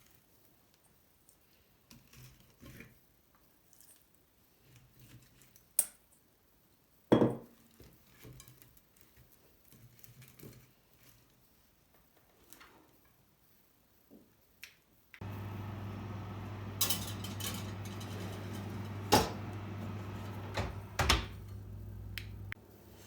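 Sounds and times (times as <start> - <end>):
dish clinking: 15.2 - 22.6
dishes and utensils scraping: 15.3 - 22.6.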